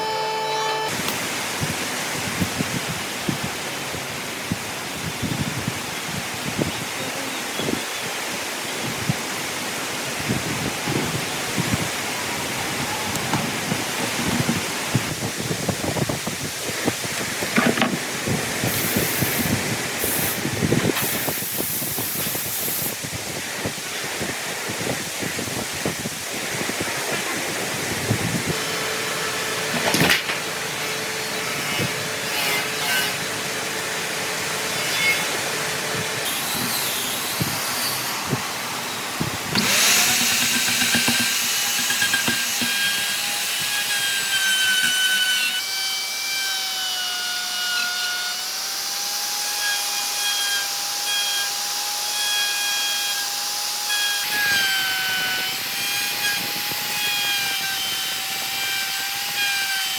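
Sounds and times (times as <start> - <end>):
power tool motor whining: 0.0 - 1.3, 28.0 - 59.9
knocks and scraping: 16.8 - 18.5, 28.1 - 33.3, 39.2 - 45.5.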